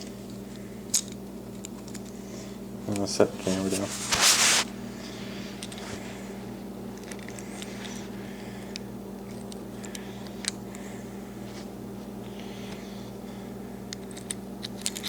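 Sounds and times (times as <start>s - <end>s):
steady low hum: 0.0s - 15.0s
camera set down rustling: 3.4s - 4.7s
small metal parts clicking: 14.0s - 15.0s.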